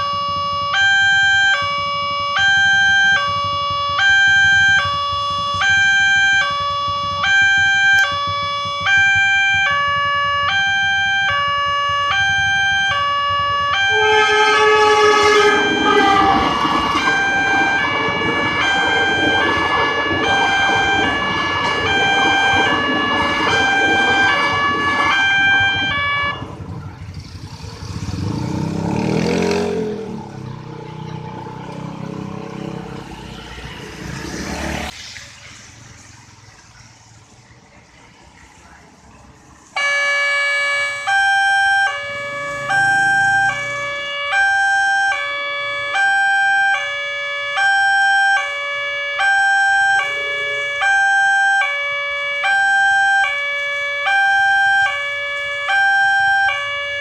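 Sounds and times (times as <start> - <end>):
level crossing warning siren: 0.0 - 35.0, 39.6 - 57.0
train passing rush: 13.3 - 40.0.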